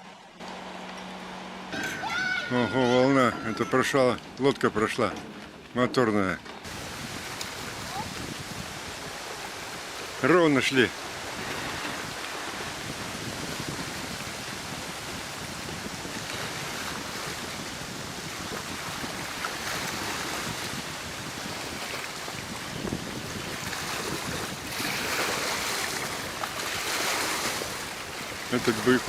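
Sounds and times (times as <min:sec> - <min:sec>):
waves splashing: 0:01.2 - 0:29.0
wind on microphone: 0:06.6 - 0:10.2, 0:11.0 - 0:29.0.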